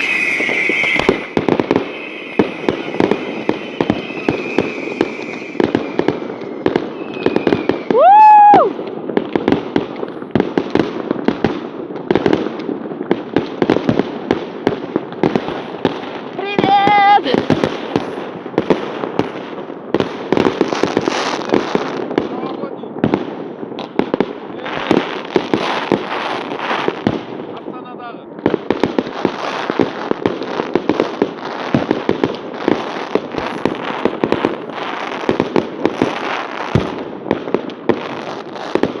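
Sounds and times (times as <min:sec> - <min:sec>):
deep firework boom: 0:00.0 - 0:09.7
fireworks bangs: 0:00.0 - 0:39.0
fireworks crackling: 0:00.0 - 0:39.0.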